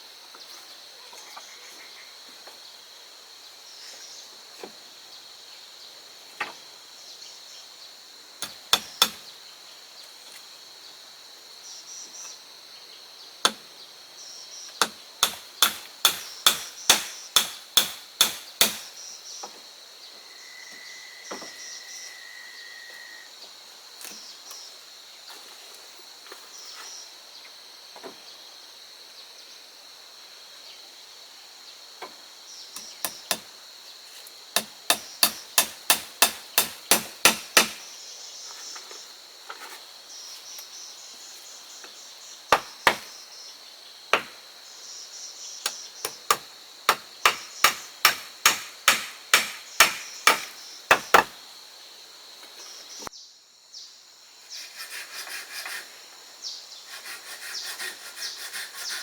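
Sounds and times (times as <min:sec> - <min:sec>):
hammer blows on wood: 0:46.9 - 0:51.2.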